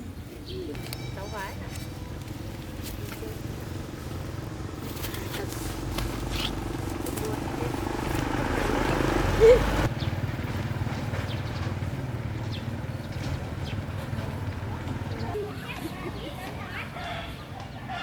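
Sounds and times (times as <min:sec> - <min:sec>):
vehicle engine running: 0:00.8 - 0:15.7
murmur of voices: 0:14.7 - 0:18.0.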